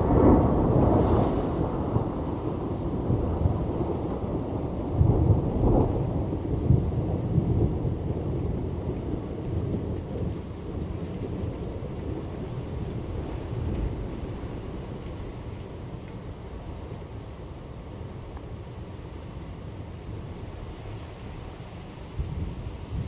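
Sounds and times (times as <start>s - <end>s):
thunder rumbling: 0.0s - 17.2s
steady rain: 0.0s - 23.0s.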